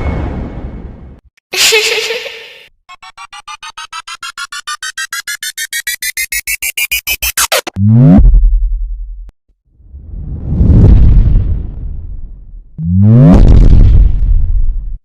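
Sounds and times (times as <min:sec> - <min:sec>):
synth sweep: 0:02.9 - 0:08.4
rising electronic beeps: 0:02.9 - 0:08.5
deep bass drop: 0:04.6 - 0:15.0.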